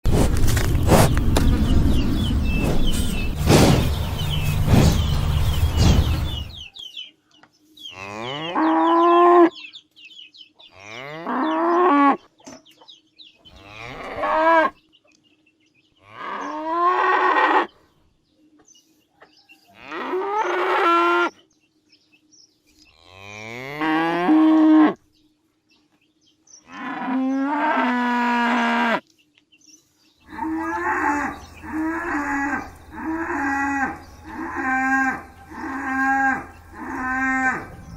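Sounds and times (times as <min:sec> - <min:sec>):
loud rushing noise: 0:00.1 - 0:06.6
cow mooing: 0:30.3 - 0:37.9.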